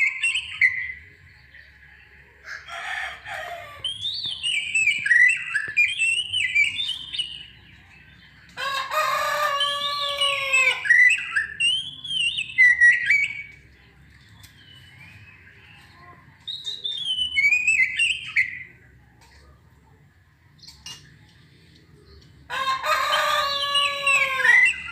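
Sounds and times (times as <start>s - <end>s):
bird singing whistled phrases: 0.0s - 1.0s, 3.8s - 7.6s, 9.7s - 13.6s, 16.5s - 18.7s
bird crowing call: 22.5s - 24.9s.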